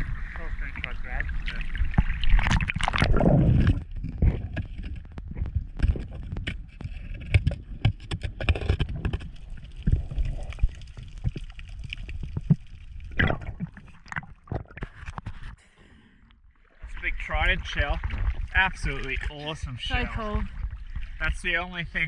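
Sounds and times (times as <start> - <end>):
water sloshing and gurgling: 0.0 - 22.0
underwater clicks and knocks: 1.4 - 15.6, 17.9 - 19.3, 20.5 - 21.2.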